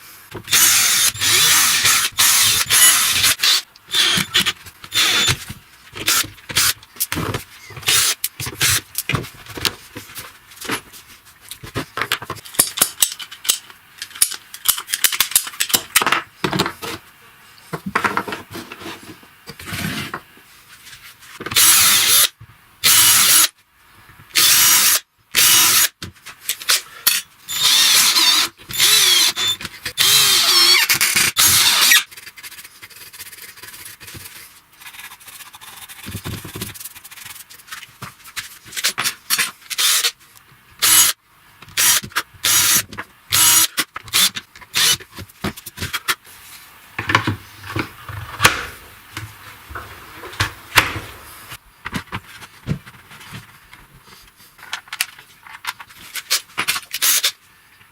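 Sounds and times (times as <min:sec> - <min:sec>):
power drill bursts: 0:00.5 - 0:05.4, 0:21.6 - 0:23.5, 0:24.4 - 0:25.9, 0:27.5 - 0:32.0, 0:40.8 - 0:41.1, 0:41.8 - 0:45.0
clicks and knocks handling parts: 0:51.8 - 0:57.0.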